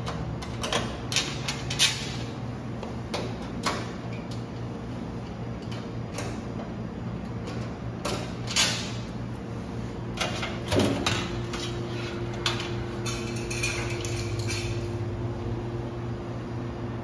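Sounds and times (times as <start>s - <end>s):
steady electrical hum: 0.0s - 17.0s
metal parts clicking and clattering: 12.4s - 15.1s.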